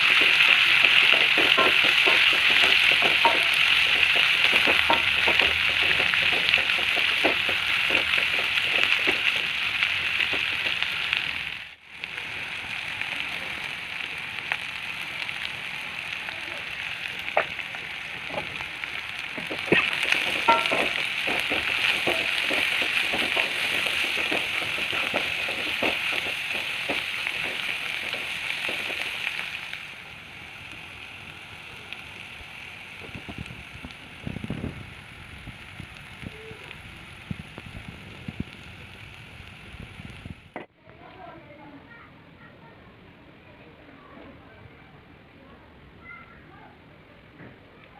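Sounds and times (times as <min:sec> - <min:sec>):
stirring clicks and taps in pan: 0:00.0 - 0:11.5, 0:17.2 - 0:29.8
vegetables sizzling in hot oil: 0:00.0 - 0:40.7.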